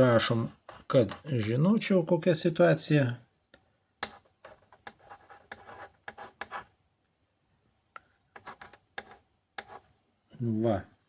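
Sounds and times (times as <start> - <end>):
pen scratching on paper: 0.6 - 1.3, 4.0 - 6.7, 8.4 - 9.9.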